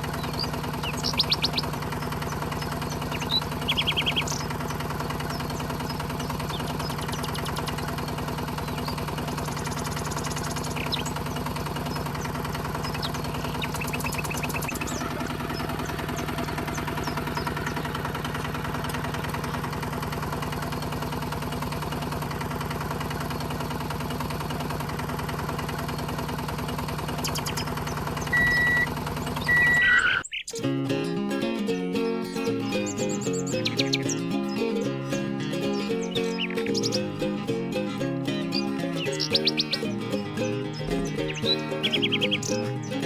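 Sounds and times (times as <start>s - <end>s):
small electric motor humming: 27.0s - 30.1s
short high beeps: 28.3s - 28.9s.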